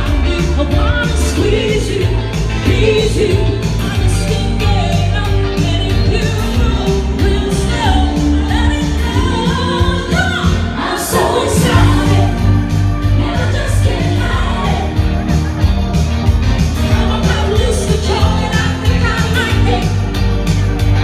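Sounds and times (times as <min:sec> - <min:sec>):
person singing: 0:00.0 - 0:15.4
live rock and roll band: 0:00.0 - 0:21.0.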